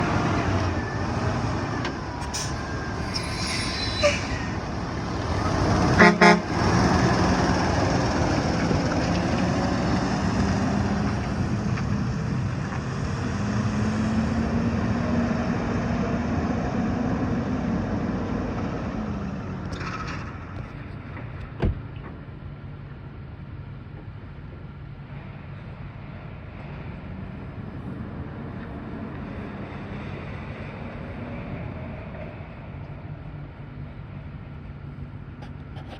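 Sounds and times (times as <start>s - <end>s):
truck horn double honk: 5.8s - 6.9s.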